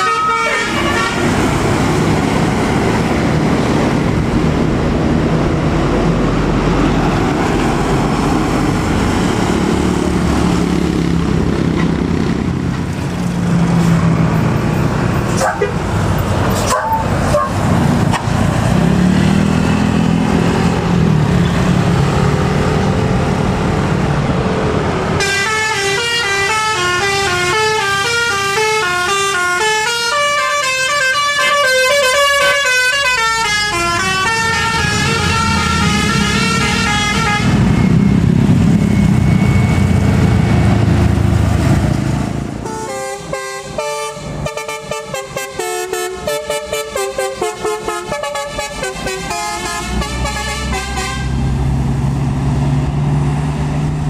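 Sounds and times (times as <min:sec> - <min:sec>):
musical bus horn tune: 0:00.0 - 0:01.6, 0:25.1 - 0:37.7, 0:42.6 - 0:51.5
bus engine running: 0:00.0 - 0:54.0.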